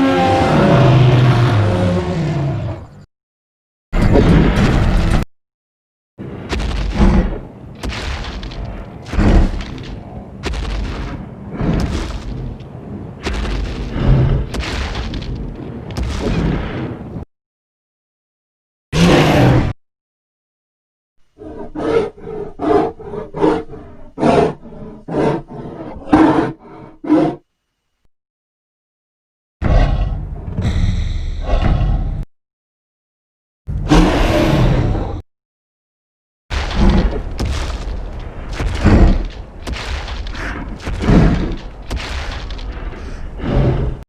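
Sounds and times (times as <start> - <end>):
dinosaur roaring calls: 0.0 - 2.9, 21.4 - 27.4, 29.6 - 30.4, 33.8 - 35.2.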